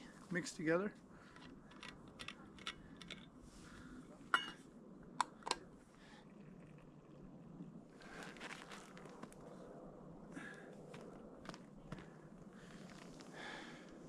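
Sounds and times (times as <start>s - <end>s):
camp gear clicks and knocks: 1.3s - 3.3s
ringing cup clinks: 4.4s - 4.6s.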